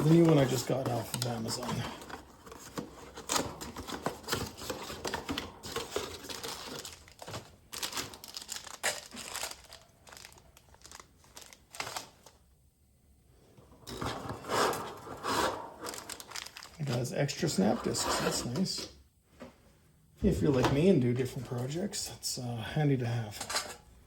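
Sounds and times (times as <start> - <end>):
packaging crinkling and tearing: 0.0 - 12.5, 14.7 - 18.6.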